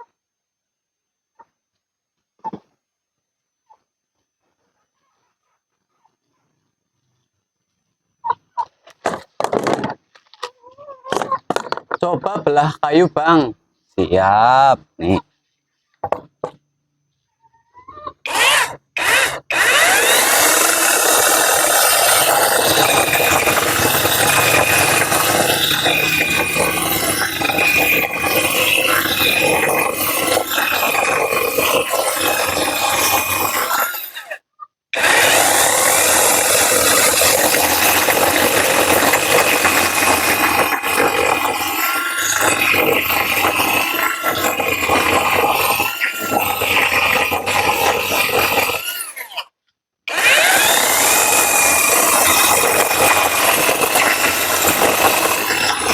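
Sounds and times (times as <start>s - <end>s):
battery chainsaw cutting wood: 18.3s - 34.4s, 35.0s - 55.9s.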